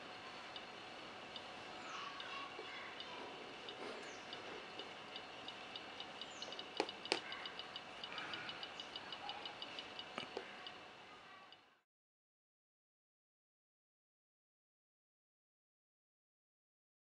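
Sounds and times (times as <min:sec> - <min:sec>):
faint high-pitched ticks: 0:00.0 - 0:11.8
sharp clicks: 0:02.2 - 0:10.8.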